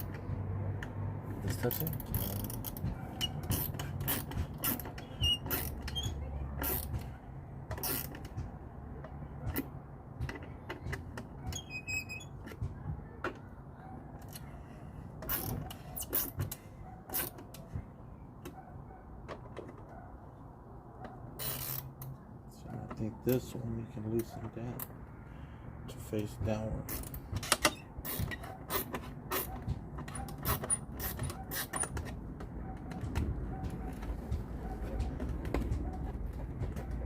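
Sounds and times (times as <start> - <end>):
clicks and taps of tools: 7.7 - 11.4, 26.9 - 37.0.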